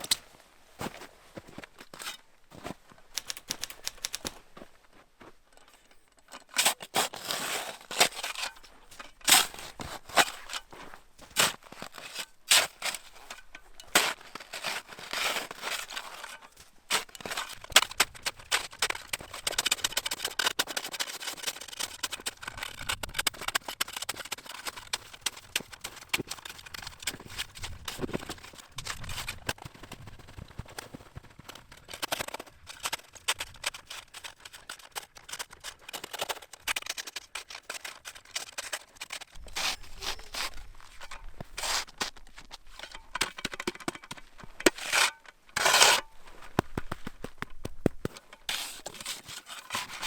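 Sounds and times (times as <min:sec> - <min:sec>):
snowshoe footsteps crunching snow: 0:00.1 - 0:05.5, 0:06.9 - 0:17.4, 0:39.4 - 0:43.2, 0:44.1 - 0:50.0.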